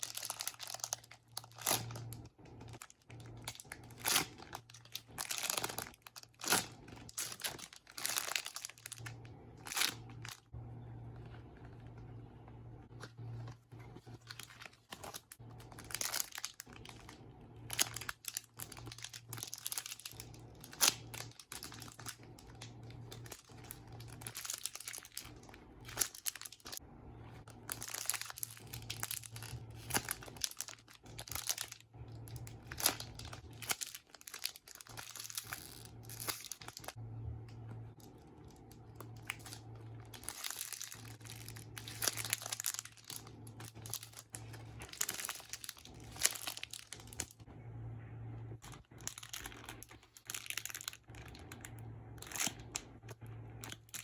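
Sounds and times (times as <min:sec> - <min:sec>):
plastic packaging crinkling: 0:00.0 - 0:47.5, 0:48.5 - 0:54.0
faint low hum: 0:00.0 - 0:54.0.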